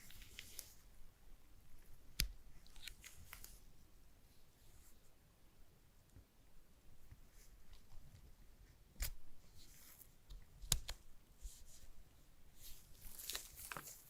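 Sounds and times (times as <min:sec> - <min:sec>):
packaging rustling: 0:12.8 - 0:14.0.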